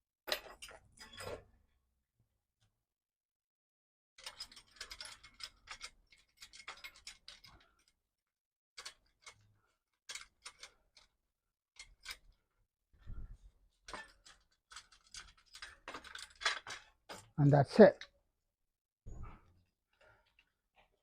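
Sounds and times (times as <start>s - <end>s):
metallic clicks and rattles: 4.2s - 8.0s, 10.1s - 11.2s, 11.8s - 12.4s, 13.9s - 17.4s.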